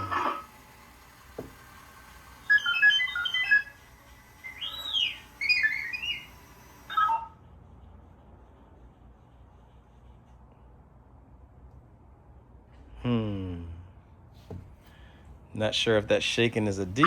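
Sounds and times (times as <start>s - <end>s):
robot toy beeps and whistles: 2.3s - 7.4s.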